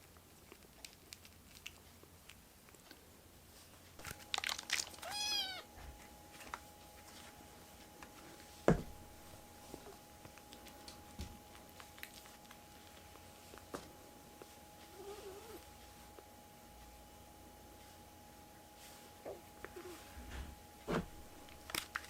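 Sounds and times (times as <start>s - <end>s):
kitten meowing: 5.0s - 5.7s.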